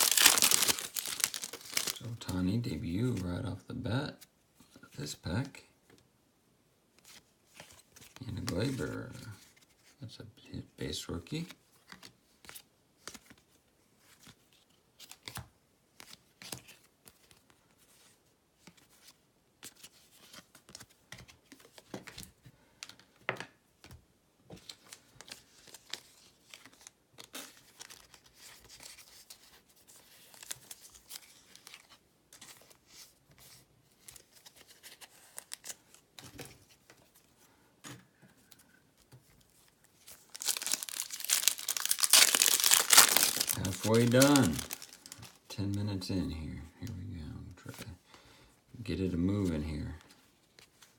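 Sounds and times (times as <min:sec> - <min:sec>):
wrapper crinkling: 0:00.0 - 0:02.3, 0:40.0 - 0:45.5
card wrapper tearing and rustling: 0:00.0 - 0:02.4, 0:30.2 - 0:32.0, 0:40.0 - 0:45.5.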